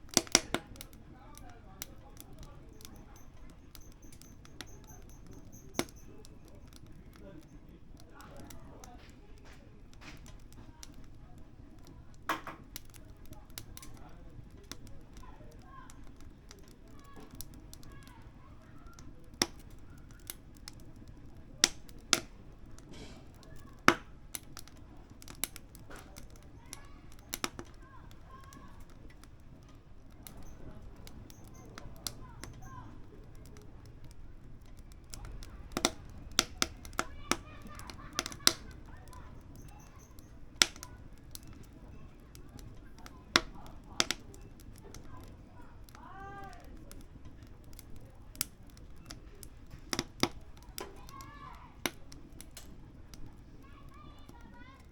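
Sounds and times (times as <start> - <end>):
firewood crackling in stove: 0.0 - 54.9
sharp wood pops: 0.1 - 0.9, 12.2 - 13.0, 19.4 - 20.8, 21.6 - 27.8, 35.0 - 45.3, 46.8 - 53.3.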